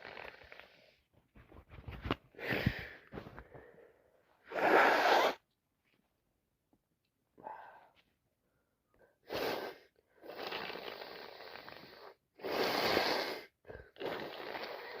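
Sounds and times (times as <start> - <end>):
woman blowing nose: 4.5 - 5.4, 9.2 - 15.0.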